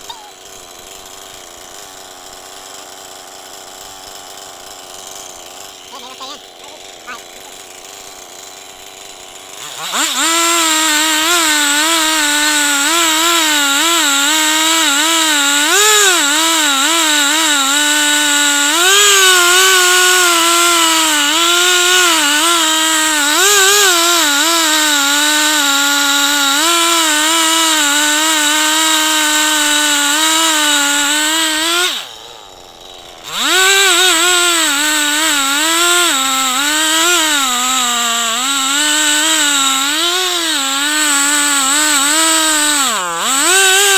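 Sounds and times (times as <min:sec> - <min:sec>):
chainsaw revving and cutting log: 0:00.0 - 0:43.9.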